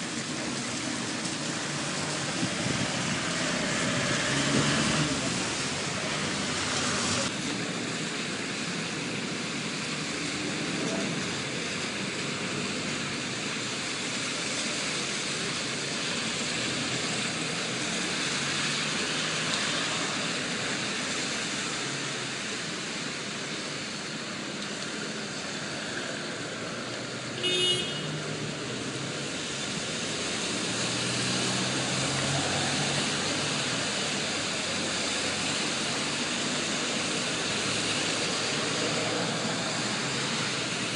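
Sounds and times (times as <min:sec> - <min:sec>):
rain hissing: 0:00.0 - 0:40.9
tyres on wet road: 0:00.0 - 0:40.9
car horn toot: 0:27.4 - 0:28.2.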